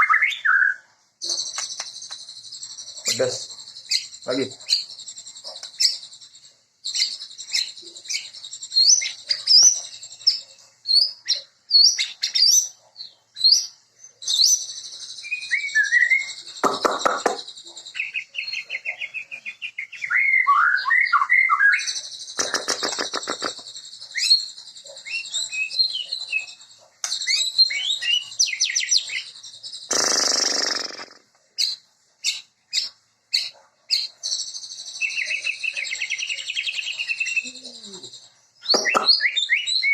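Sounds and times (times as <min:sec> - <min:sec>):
bird singing whistled phrases: 0:00.0 - 0:02.1, 0:14.3 - 0:31.2, 0:34.4 - 0:39.9.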